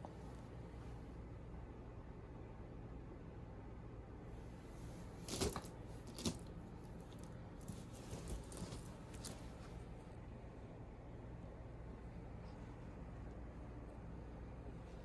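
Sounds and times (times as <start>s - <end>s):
low steady hum: 0.0s - 15.0s
faint rustling: 4.6s - 9.9s.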